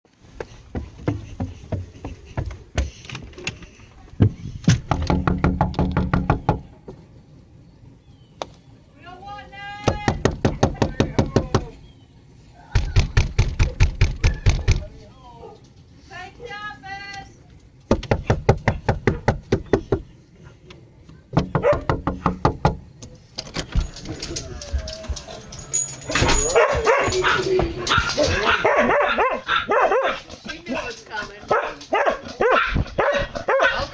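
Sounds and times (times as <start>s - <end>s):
knocking on a door: 4.2s - 6.8s, 9.8s - 11.7s, 12.8s - 14.9s, 17.9s - 20.1s, 21.3s - 22.9s
low ringing hum: 23.6s - 28.4s.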